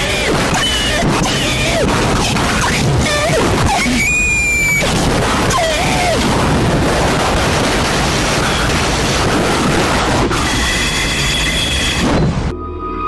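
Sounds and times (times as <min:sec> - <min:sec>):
harsh static noise: 0:00.0 - 0:12.6
deep rumble: 0:00.0 - 0:13.0
short wavering tone: 0:12.3 - 0:13.0.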